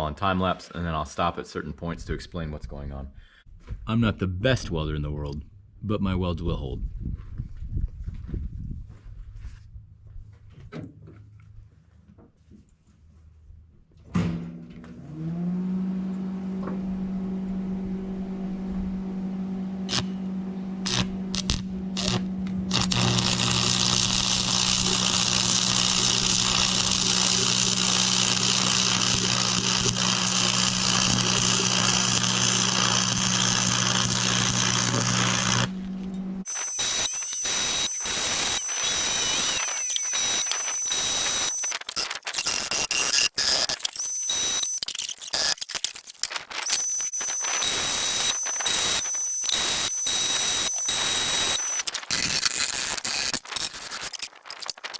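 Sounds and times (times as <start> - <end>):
high whine: 16.6 - 54.9
plasma cutter hissing: 20.9 - 35.7, 36.5 - 45.6, 46.6 - 54.9
shop noise bursts: 36.4 - 54.8.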